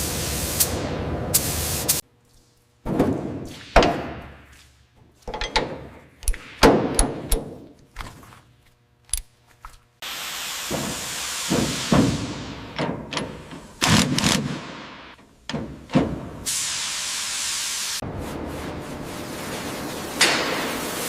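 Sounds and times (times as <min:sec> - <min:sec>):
metal clanks and thunks: 0:05.2 - 0:07.7, 0:10.7 - 0:16.5
spray hissing: 0:10.0 - 0:12.6, 0:16.5 - 0:18.0.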